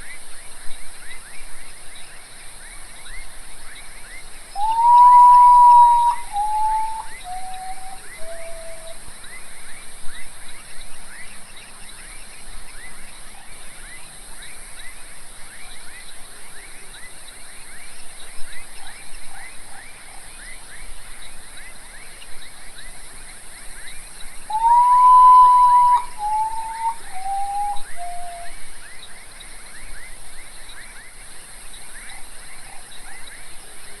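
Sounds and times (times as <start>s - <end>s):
high continuous hiss: 0.0s - 34.0s
bird singing mournful whistles: 4.5s - 9.0s, 24.4s - 29.1s
night chorus of rapid chirps: 4.6s - 9.0s, 24.5s - 30.2s.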